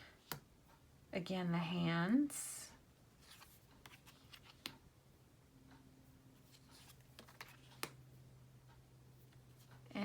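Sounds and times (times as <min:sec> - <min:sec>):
playing cards tapping: 0:06.7 - 0:08.0.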